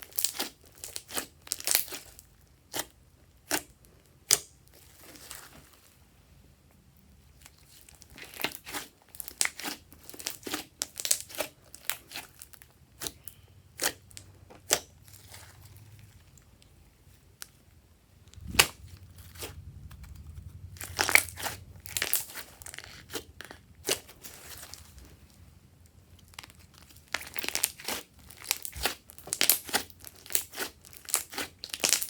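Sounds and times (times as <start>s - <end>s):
sharp slime snap: 18.4s - 19.5s
slime sticky pops and crackles: 27.0s - 32.0s.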